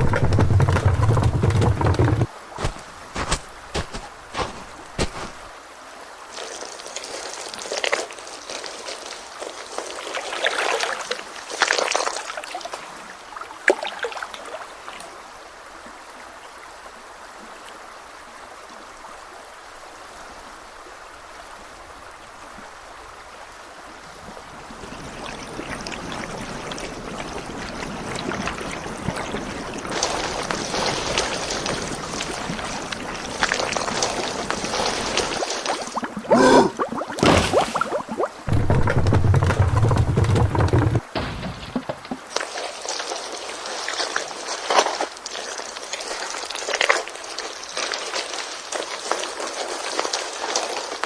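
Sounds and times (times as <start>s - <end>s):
running water: 0.0s - 51.0s.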